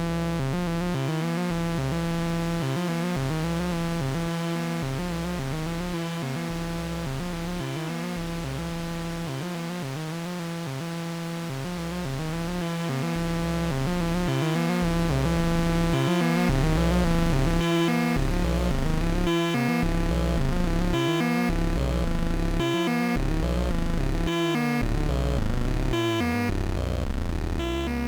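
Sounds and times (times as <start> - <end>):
pulsing bass notes: 11.6 - 28.0
stepped synth notes: 11.8 - 28.0.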